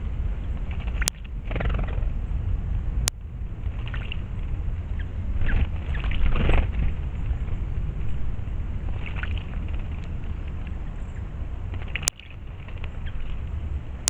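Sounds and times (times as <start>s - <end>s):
wind rumbling on microphone: 0.0s - 14.0s
sharp clicks: 0.7s - 1.9s, 11.8s - 12.9s.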